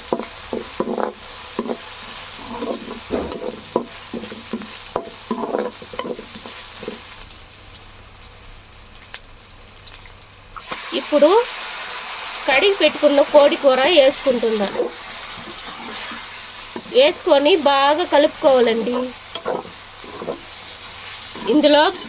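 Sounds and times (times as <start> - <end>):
onions sizzling in hot oil: 0.0 - 22.0
spoon scraping and stirring: 2.4 - 7.0, 18.9 - 22.0.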